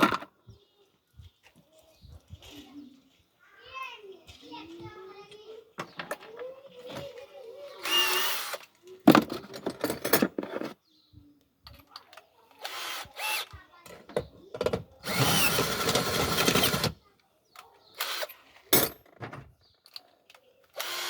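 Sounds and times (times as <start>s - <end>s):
power drill bursts: 7.8s - 8.6s, 12.6s - 13.6s, 15.0s - 17.0s, 18.0s - 18.4s, 20.8s - 21.0s.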